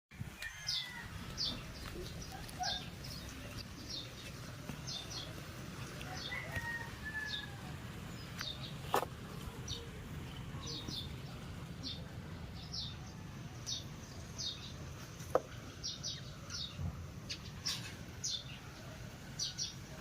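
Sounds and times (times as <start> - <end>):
small birds chirping: 0.2 - 20.0
steady low rumble: 6.9 - 19.4.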